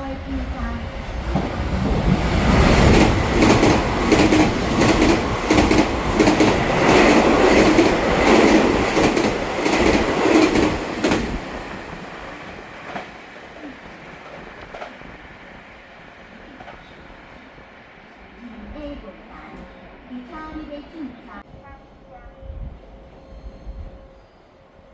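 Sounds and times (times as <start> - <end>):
train passing at speed: 0.0 - 24.9
wheels clacking over rail joints: 1.2 - 13.3.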